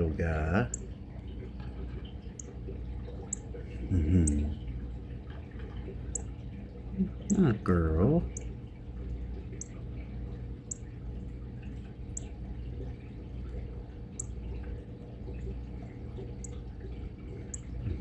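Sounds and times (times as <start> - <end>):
fish tank pump hum: 0.0 - 18.0
water dripping: 0.0 - 18.0.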